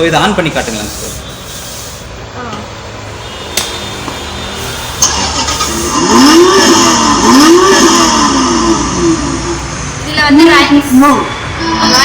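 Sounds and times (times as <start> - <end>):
recorded engine revving sound effect: 5.0 - 10.0.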